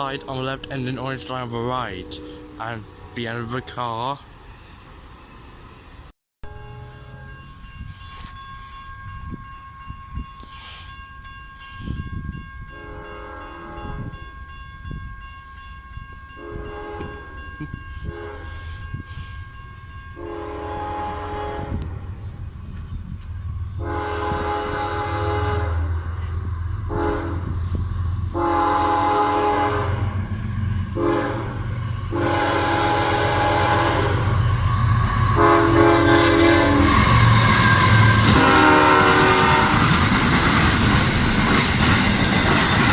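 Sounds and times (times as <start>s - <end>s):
locomotive horn blasts: 0.0s - 4.0s, 6.4s - 7.6s, 12.7s - 14.2s, 16.4s - 17.4s, 18.0s - 18.7s, 20.2s - 21.9s, 23.8s - 26.0s, 26.9s - 27.6s, 28.3s - 30.2s, 30.9s - 39.9s.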